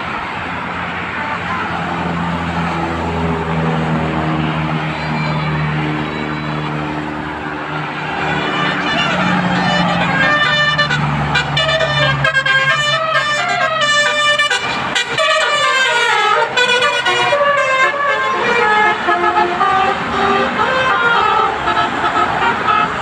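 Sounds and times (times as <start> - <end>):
bus engine running low: 0.0 - 23.0
musical air horn playing a tune: 8.3 - 23.0.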